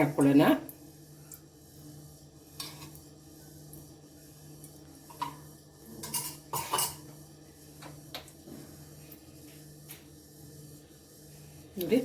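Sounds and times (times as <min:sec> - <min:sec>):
metal utensils clinking on dishes: 0:06.0 - 0:07.1.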